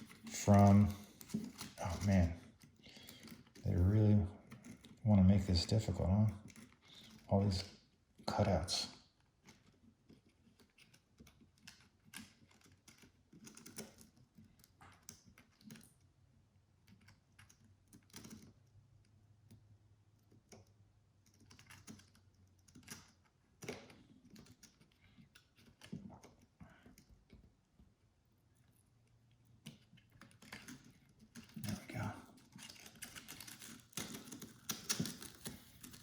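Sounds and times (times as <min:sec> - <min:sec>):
backing sheet peeling crinkles: 0:00.0 - 0:04.4, 0:31.1 - 0:36.0.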